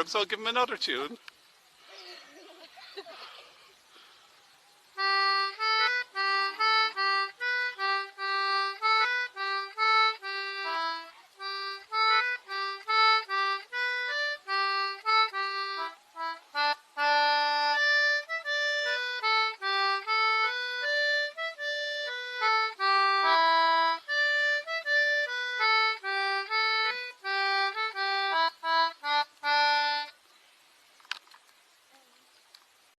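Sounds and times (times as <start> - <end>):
lively free-reed instrument tune: 4.9 - 30.2.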